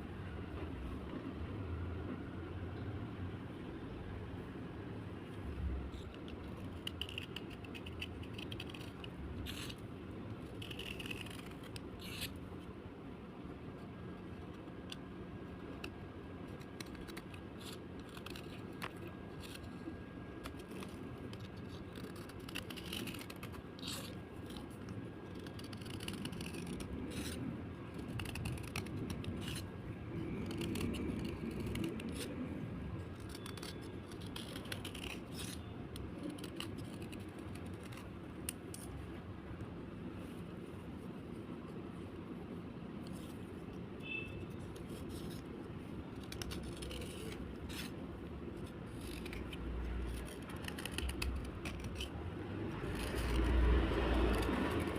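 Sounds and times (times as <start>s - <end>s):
slate being scraped: 6.0s - 9.8s, 10.4s - 12.4s, 25.3s - 32.4s, 46.2s - 48.0s.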